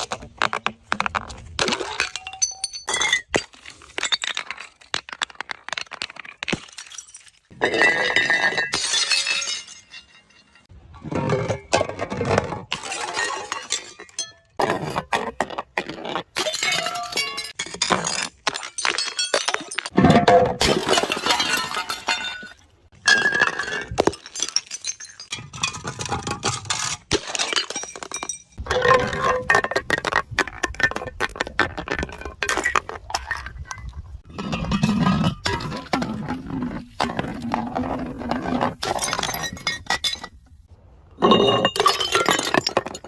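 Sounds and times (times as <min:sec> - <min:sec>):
glass bottles breaking: 0:01.6 - 0:10.7, 0:16.4 - 0:30.4, 0:38.7 - 0:40.4, 0:41.2 - 0:43.0.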